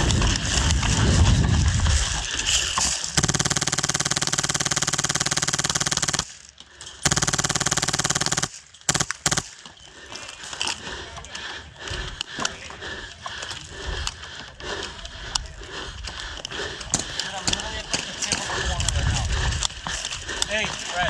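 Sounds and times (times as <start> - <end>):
airsoft gun firing full-auto: 3.2 - 9.6.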